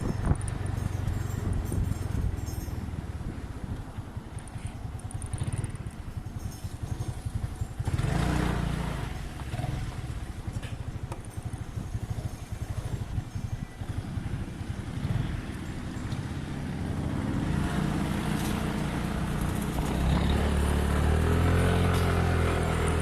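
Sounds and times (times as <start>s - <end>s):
wind rushing over microphone: 0.0s - 6.3s
motor scooter engine: 0.0s - 23.0s.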